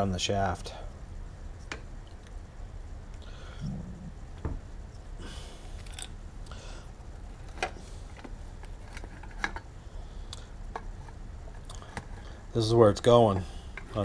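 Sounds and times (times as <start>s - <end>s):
low steady hum: 0.0s - 14.0s
rustles of small parts: 5.5s - 6.2s, 6.8s - 9.8s.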